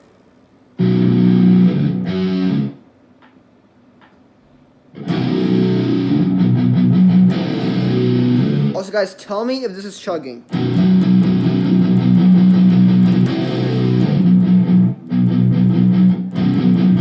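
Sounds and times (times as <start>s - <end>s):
electric guitar riff: 0.8s - 2.8s, 5.0s - 8.8s, 10.5s - 17.0s.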